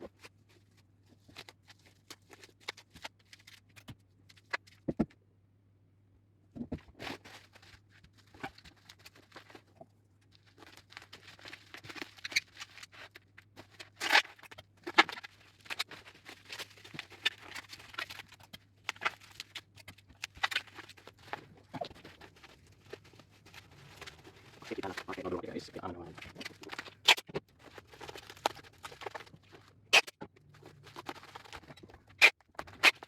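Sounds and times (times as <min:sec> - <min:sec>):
packaging crinkling: 0:10.3 - 0:33.0
packing tape tearing: 0:26.3 - 0:30.1, 0:30.8 - 0:33.0.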